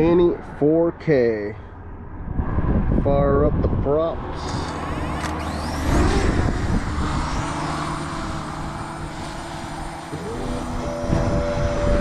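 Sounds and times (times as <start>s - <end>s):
drone propellers buzzing: 4.2s - 12.0s.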